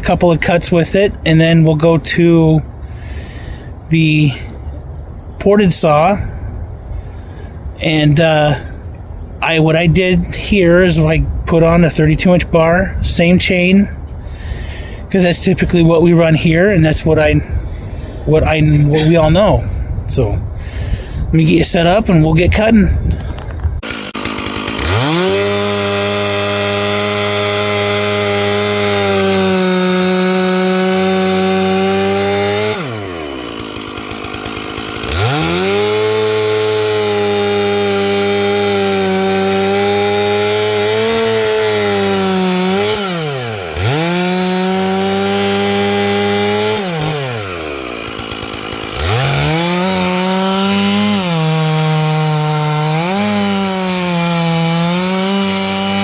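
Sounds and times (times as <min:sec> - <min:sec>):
chainsaw cutting wood: 0:22.5 - 0:56.0.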